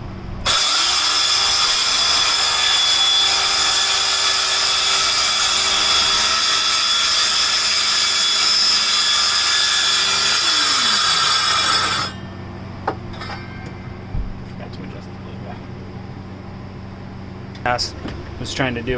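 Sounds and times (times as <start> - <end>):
power saw cutting wood: 0.4 - 12.2.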